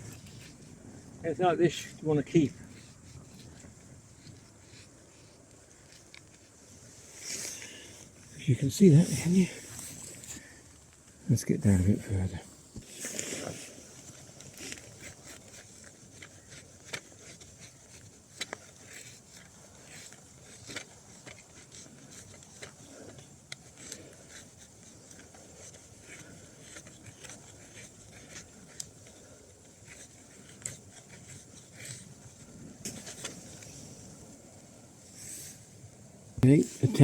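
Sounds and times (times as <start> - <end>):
knife scraping a stick: 1.8 - 8.0, 12.8 - 34.2.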